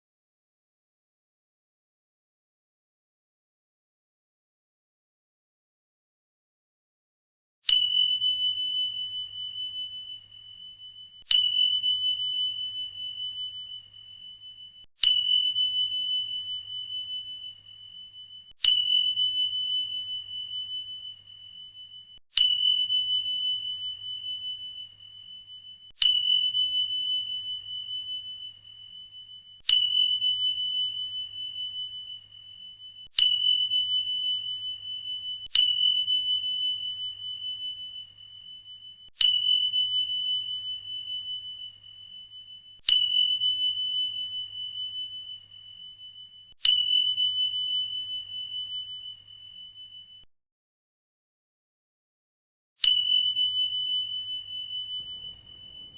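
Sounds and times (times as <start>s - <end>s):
high bell-like chime: 52.9s - 55.9s.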